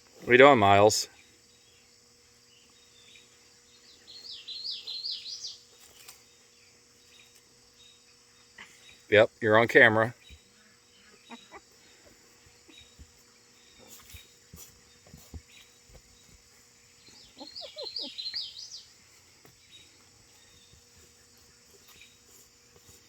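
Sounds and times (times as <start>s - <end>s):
dog paws scratching dirt: 11.2s - 23.0s.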